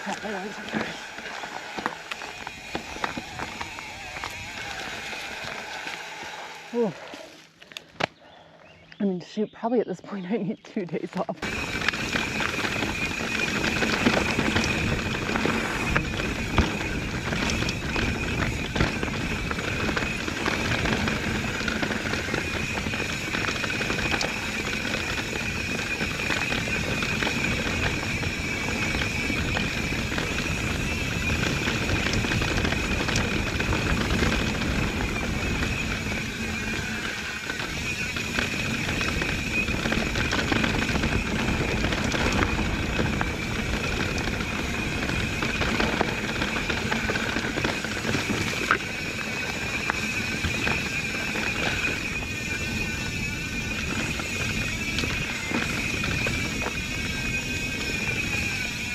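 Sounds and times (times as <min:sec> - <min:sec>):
high-pitched hum: 0:00.0 - 0:07.4, 0:11.4 - 0:58.9
bike tyre and wind noise: 0:00.0 - 0:09.0, 0:11.4 - 0:58.9
bike knocks and rattles: 0:11.4 - 0:58.9.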